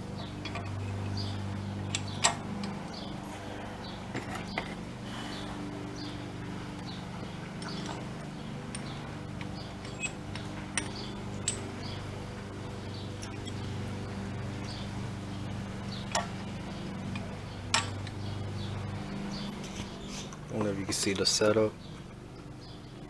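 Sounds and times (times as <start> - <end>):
steady low hum: 0.0 - 23.0
metal tools clinking: 0.4 - 1.0, 6.7 - 12.0, 13.2 - 13.8, 17.0 - 18.3.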